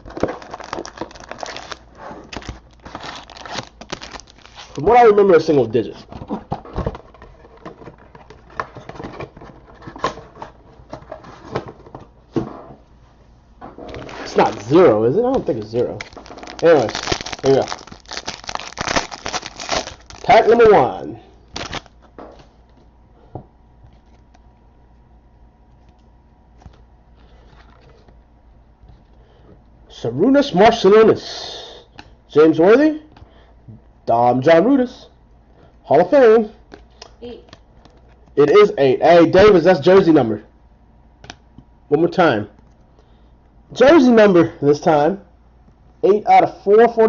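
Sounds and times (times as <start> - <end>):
cards being handled: 0.0 - 4.8, 13.9 - 20.5
low electrical hum: 0.0 - 47.0.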